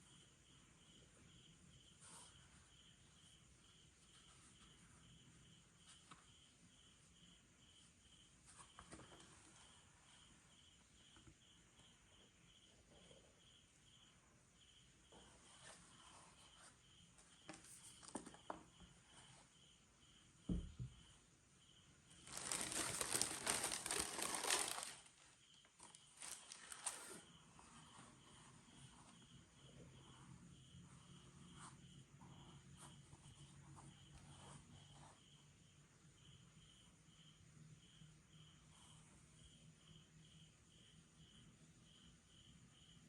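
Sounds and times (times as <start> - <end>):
dull thump: 20.5 - 21.0
loud packaging crinkling: 22.2 - 27.2
packaging rustling: 22.2 - 27.2.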